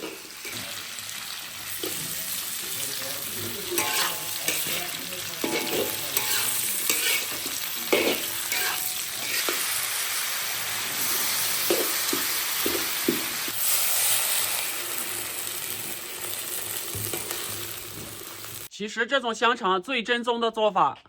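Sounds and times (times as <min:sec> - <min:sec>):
sausage sizzling in a wok: 0:00.0 - 0:18.7
spatula scraping and knocking pan: 0:03.7 - 0:09.7.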